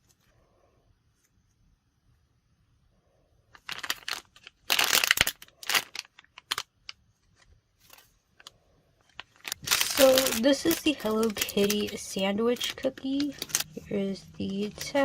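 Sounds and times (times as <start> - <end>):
plastic wrapping crinkling: 3.6 - 15.0.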